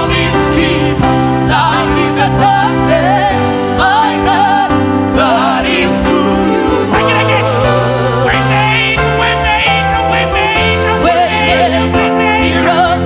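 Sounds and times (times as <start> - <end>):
sustained held chords: 5.9 - 13.0.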